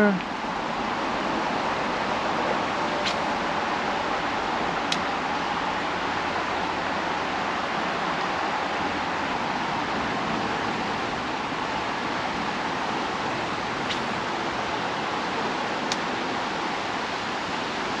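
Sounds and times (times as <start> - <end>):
creek water rushing: 0.0 - 18.0.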